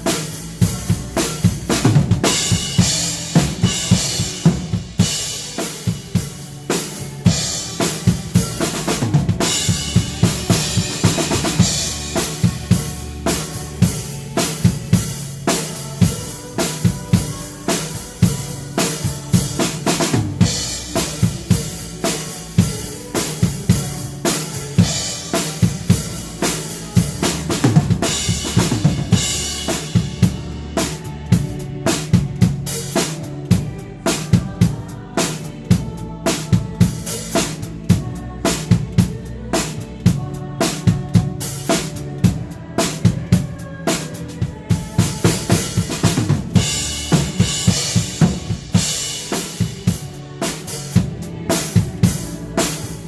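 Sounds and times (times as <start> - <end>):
band backing music: 0.0 - 53.0
drum kit beat with rimshots: 0.0 - 53.0.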